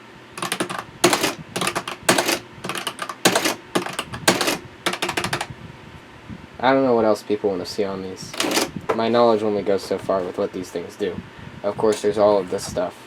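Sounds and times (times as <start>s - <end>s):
adding machine keys clacking: 0.0s - 5.5s, 8.3s - 10.4s.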